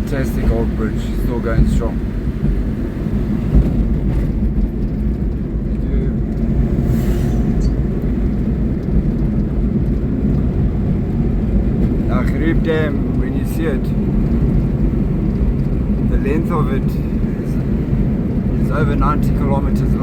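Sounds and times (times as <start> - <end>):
truck engine and road noise: 0.0 - 20.0.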